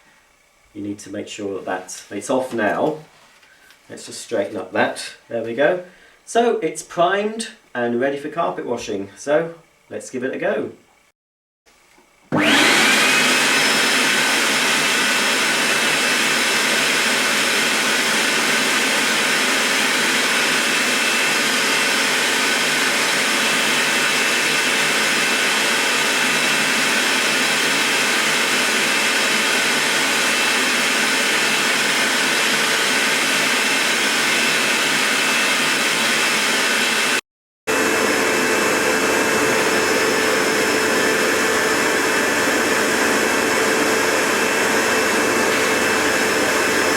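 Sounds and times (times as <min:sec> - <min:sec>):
carpet washer suction motor whining: 0:11.9 - 0:46.9.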